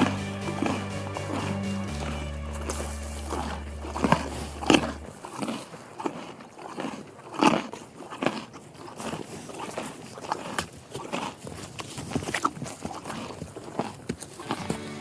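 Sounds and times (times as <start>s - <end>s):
low music drone: 0.0s - 5.2s.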